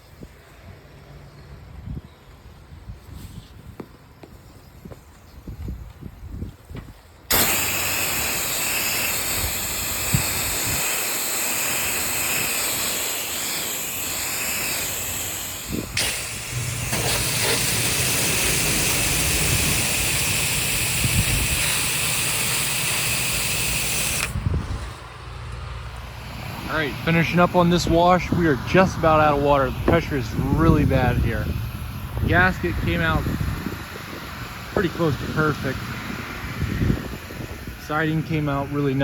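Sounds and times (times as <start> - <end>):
pump and engine hum: 6.6 - 39.0
spray wand hissing: 7.3 - 24.4.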